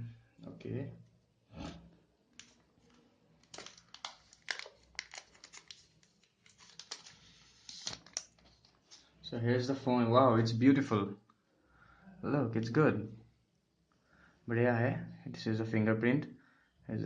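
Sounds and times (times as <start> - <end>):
packaging clicks taps and rustles: 2.4 - 8.9.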